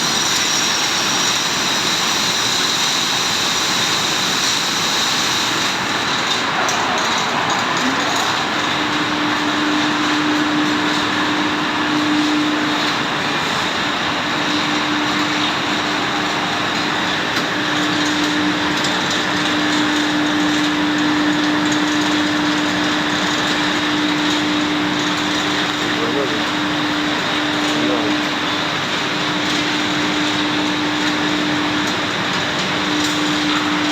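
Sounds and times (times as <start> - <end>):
machine whirring: 0.0 - 33.9.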